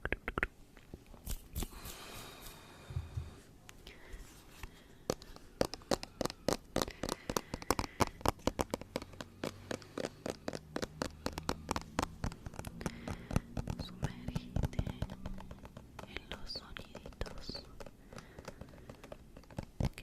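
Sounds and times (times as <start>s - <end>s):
sharp clicks and taps: 0.0s - 0.5s, 5.1s - 20.0s.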